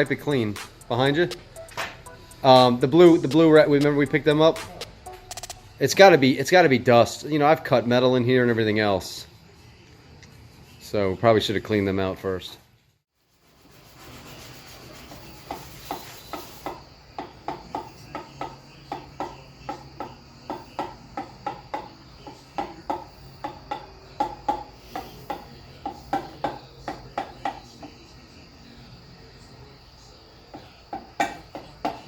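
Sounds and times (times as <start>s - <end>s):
cloth rubbing in cylinder: 13.2s - 16.6s.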